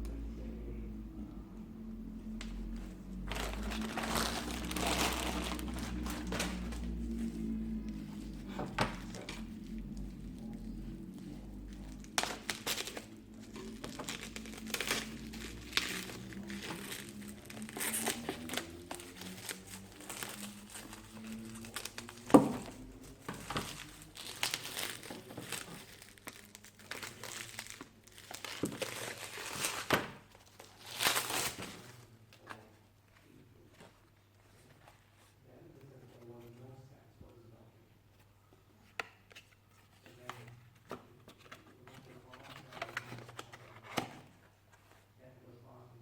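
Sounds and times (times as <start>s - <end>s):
packaging crinkling: 3.1s - 32.0s.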